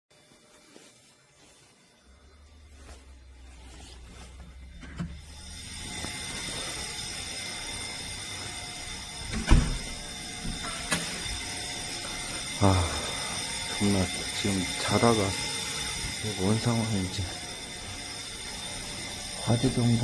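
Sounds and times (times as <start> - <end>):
fire alarm ringing: 1.5 - 20.0.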